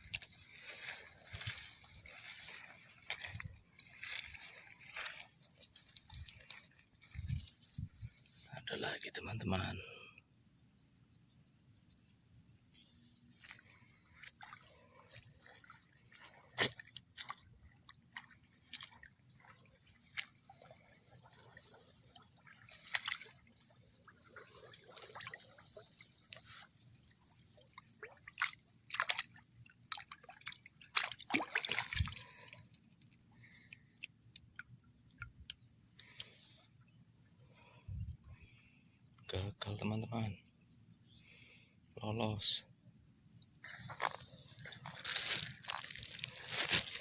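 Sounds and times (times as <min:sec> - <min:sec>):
fish splashing in shallow water: 0:00.0 - 0:08.2, 0:13.4 - 0:37.7, 0:43.8 - 0:47.0
insect chirring: 0:00.0 - 0:47.0.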